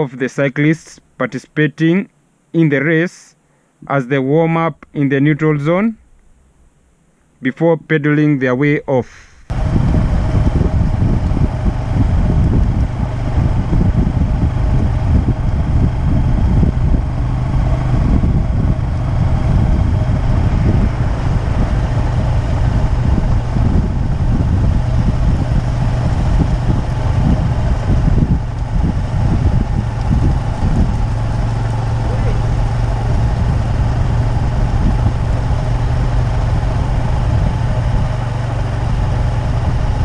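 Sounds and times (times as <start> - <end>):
low engine hum: 9.5 - 40.0
wind buffeting microphone: 9.5 - 40.0.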